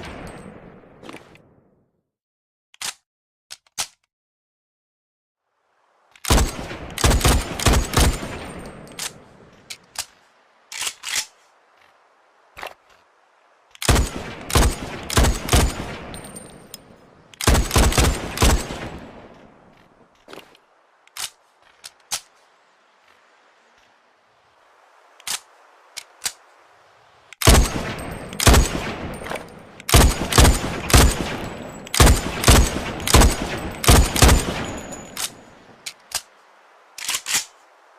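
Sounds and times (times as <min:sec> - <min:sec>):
rifle shots with reverberation: 0:13.8 - 0:16.3, 0:17.4 - 0:19.1, 0:27.4 - 0:35.4.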